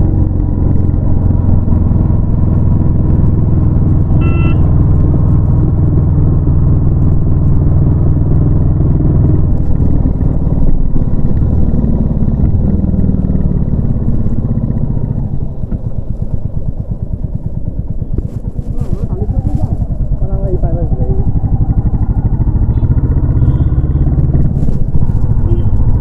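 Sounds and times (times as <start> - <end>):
short high beep: 4.2 - 4.6
motorcycle engine thumping: 9.6 - 19.1.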